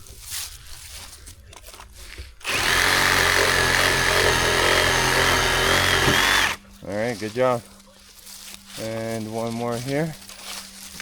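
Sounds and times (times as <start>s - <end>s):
power saw cutting wood: 2.4s - 6.6s.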